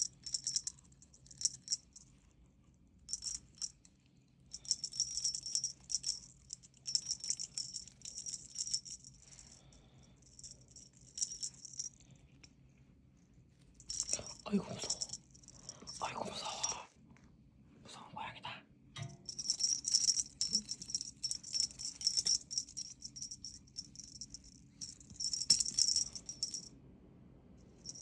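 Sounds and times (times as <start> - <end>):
light high rattling: 3.1 - 3.7, 4.6 - 12.0, 13.8 - 16.8, 19.0 - 26.7, 27.8 - 28.0.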